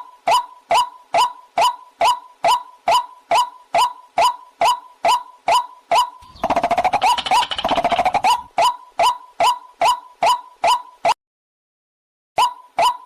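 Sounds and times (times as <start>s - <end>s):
waterhen call: 6.0s - 10.8s
bird chattering: 6.2s - 8.6s.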